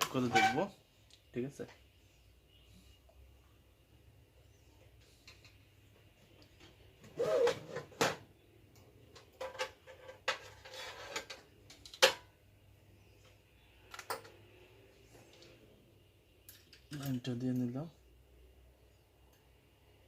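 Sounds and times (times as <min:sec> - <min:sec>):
small tools clicking and knocking: 0:08.7 - 0:12.3, 0:13.2 - 0:14.4, 0:16.4 - 0:17.7.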